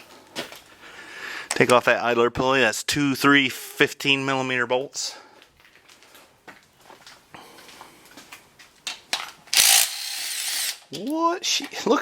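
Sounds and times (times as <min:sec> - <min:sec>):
power tool whirring: 0:09.5 - 0:10.9.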